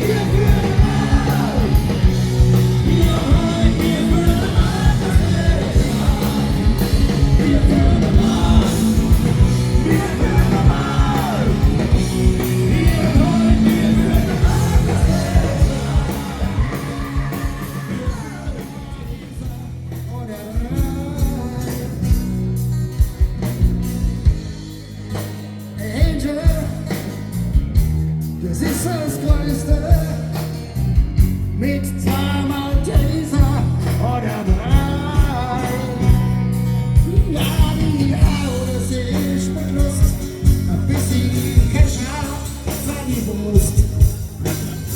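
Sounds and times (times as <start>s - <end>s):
person singing: 0.0s - 22.2s, 31.6s - 44.9s
live rock band playing: 0.0s - 44.9s.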